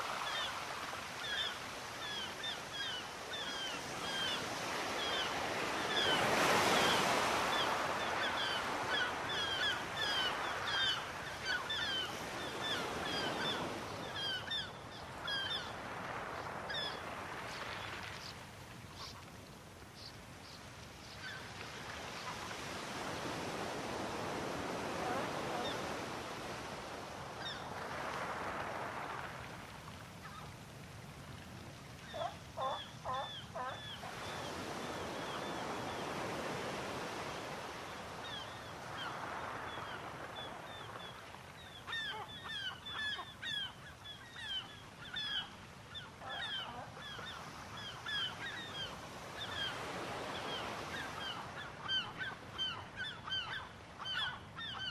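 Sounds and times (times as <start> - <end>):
sea waves breaking: 0.0 - 20.4, 21.2 - 43.5.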